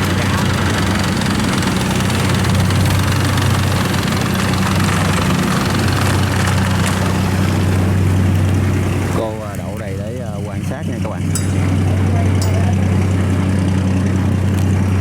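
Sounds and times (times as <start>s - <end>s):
boat engine deep hum: 0.0s - 15.0s.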